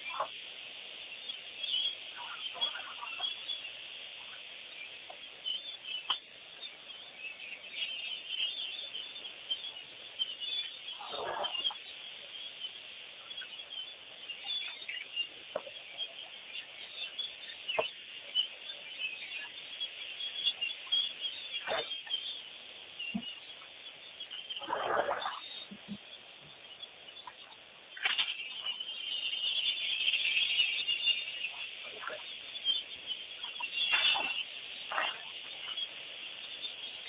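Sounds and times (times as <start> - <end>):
birds chirping in chorus: 0.0 - 37.0
loud single bird calls: 10.4 - 11.8, 20.2 - 22.4, 27.2 - 37.0.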